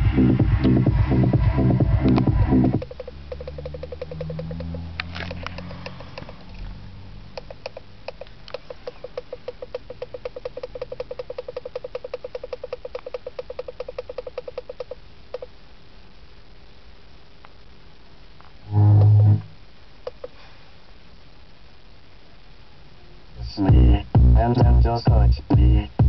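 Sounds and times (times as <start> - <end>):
car stereo knob clicking: 2.8 - 6.4, 7.4 - 14.9
low hum: 18.6 - 19.7.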